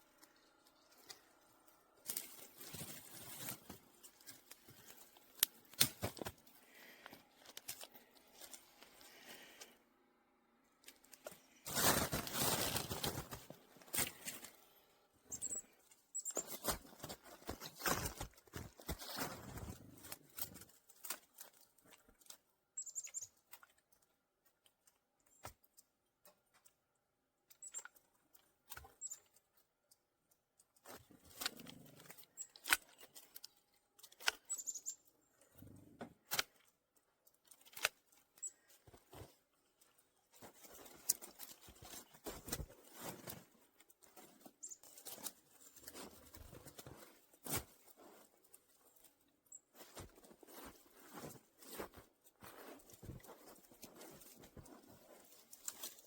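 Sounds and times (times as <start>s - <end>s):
footsteps crunching snow and twigs: 0.0s - 9.7s, 10.8s - 23.8s, 37.4s - 56.0s
high thin bird calls: 15.3s - 16.6s, 22.8s - 23.4s, 34.4s - 35.1s.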